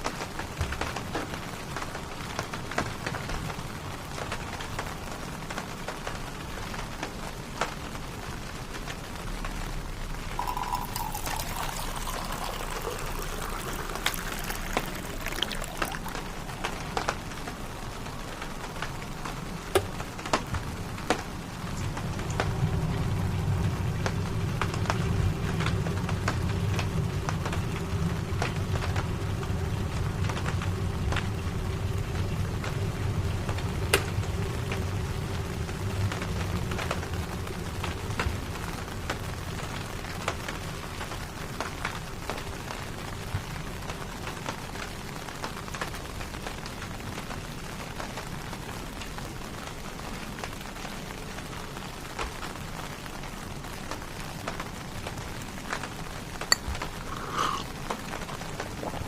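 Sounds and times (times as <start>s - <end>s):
rain pattering on a tent: 0.0s - 59.0s
drips tapping: 10.4s - 16.4s
liquid pouring into a cup: 10.4s - 16.8s, 56.5s - 57.8s, 58.7s - 59.0s.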